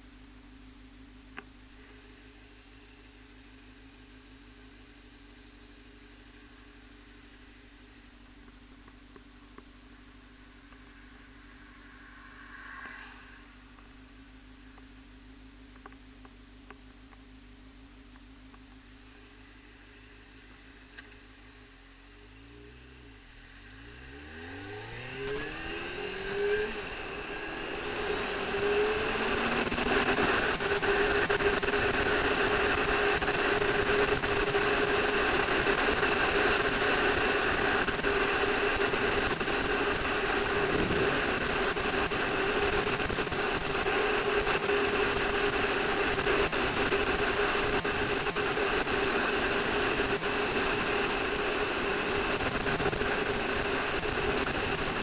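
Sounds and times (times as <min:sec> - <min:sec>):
motorcycle engine accelerating: 0:18.6 - 0:55.0.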